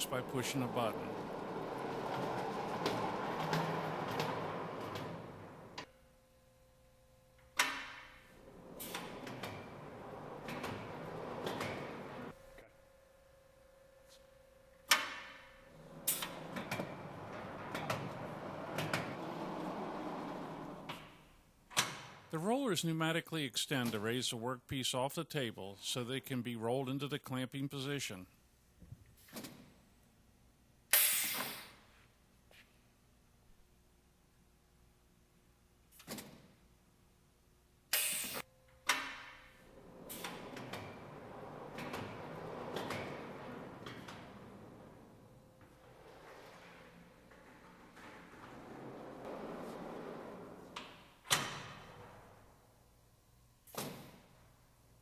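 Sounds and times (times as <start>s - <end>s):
machinery rumble: 0.0s - 5.8s, 15.7s - 20.9s.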